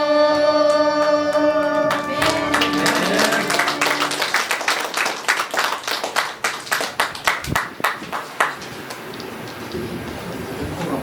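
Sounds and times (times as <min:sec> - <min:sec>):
congregation clapping in time: 0:00.6 - 0:09.0.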